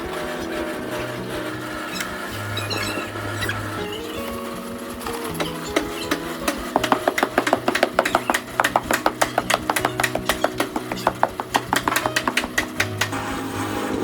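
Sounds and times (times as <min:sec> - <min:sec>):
rapid sharp taps: 0:05.2 - 0:13.2.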